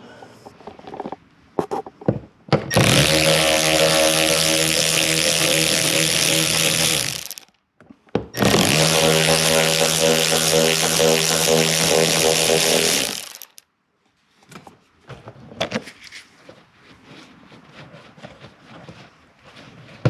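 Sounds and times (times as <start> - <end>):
handheld power tool running: 2.7 - 7.5, 8.4 - 13.6.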